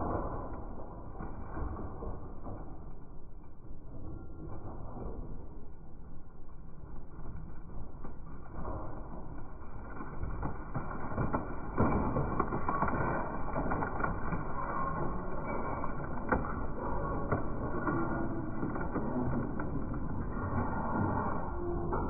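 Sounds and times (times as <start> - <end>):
sharp cracks and crunches: 7.0 - 22.0.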